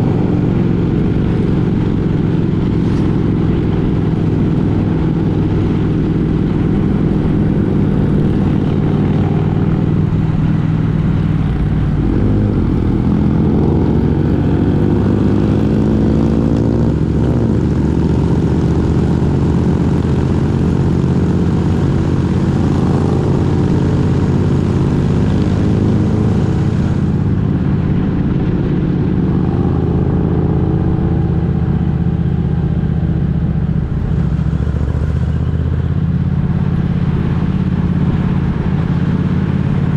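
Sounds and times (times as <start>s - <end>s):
road noise: 0.0s - 39.9s
vehicle engine running: 0.0s - 39.9s.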